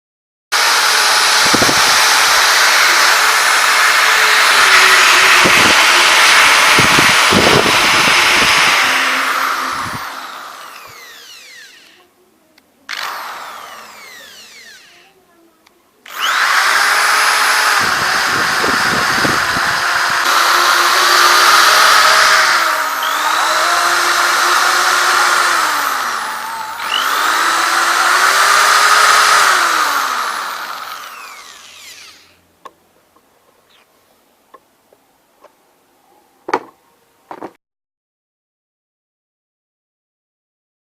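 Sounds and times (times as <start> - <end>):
electric drill whining: 0.6 - 12.1, 12.9 - 15.2, 16.0 - 32.5.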